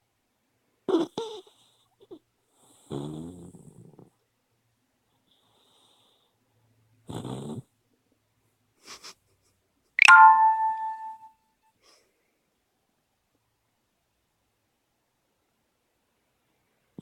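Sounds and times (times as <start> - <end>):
dog snoring: 0.9 - 4.2, 7.0 - 7.7
bell-like ding: 10.0 - 11.3.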